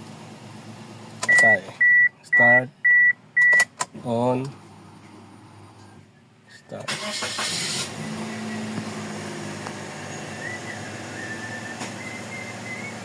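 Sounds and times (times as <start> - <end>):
car engine starting: 5.6 - 13.0
car engine idling: 6.0 - 13.0.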